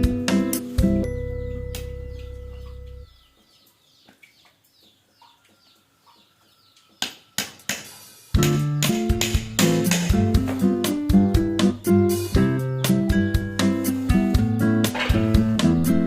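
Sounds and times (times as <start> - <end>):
sharp knocks: 7.0 - 10.7
strummed acoustic guitar: 8.4 - 16.0.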